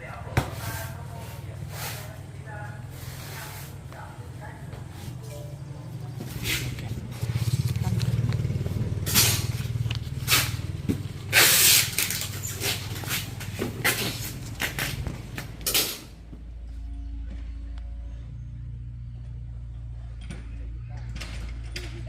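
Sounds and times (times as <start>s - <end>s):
engine running with low pulse: 4.0s - 11.3s, 13.5s - 22.0s.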